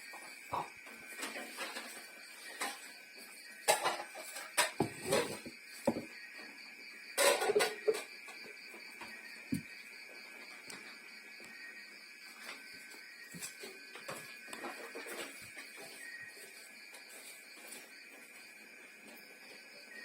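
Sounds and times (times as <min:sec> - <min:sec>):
dishes and utensils clattering: 0:00.5 - 0:02.9, 0:03.5 - 0:06.1, 0:07.2 - 0:08.3.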